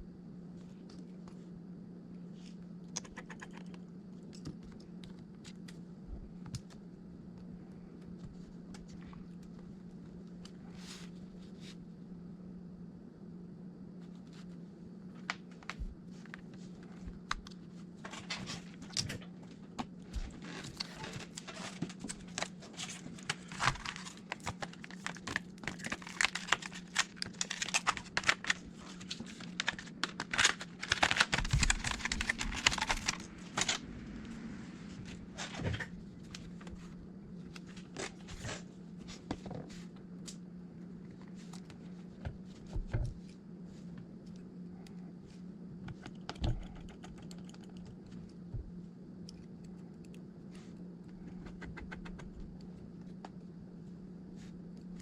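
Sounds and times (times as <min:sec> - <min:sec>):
low hum: 0:00.0 - 0:55.0
plastic film crinkling: 0:22.3 - 0:33.8.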